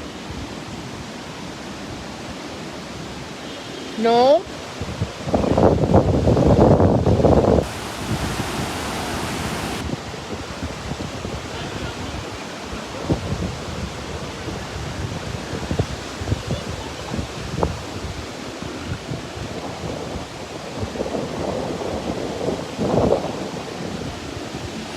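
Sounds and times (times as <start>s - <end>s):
wind buffeting microphone: 4.8s - 24.9s
water rushing: 7.6s - 10.2s.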